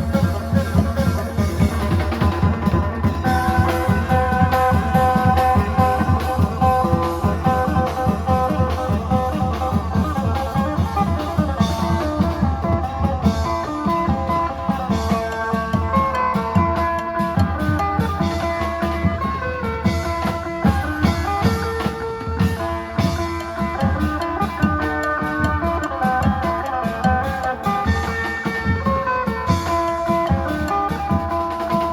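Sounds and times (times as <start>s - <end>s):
long drum rhythm and percussion: 0.0s - 31.9s.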